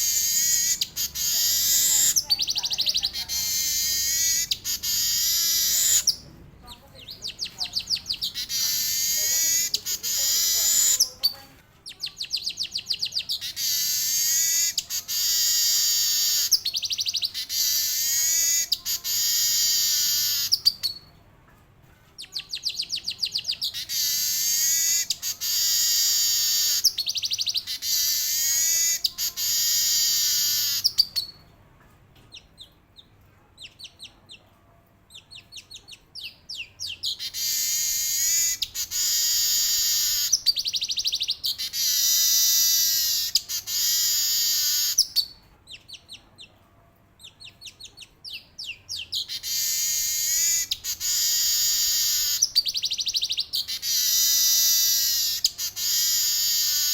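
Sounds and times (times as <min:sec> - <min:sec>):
weaver bird singing buzzy wheeze: 0:00.0 - 0:02.6, 0:03.2 - 0:06.2, 0:08.3 - 0:11.2, 0:17.3 - 0:20.8, 0:23.7 - 0:31.0.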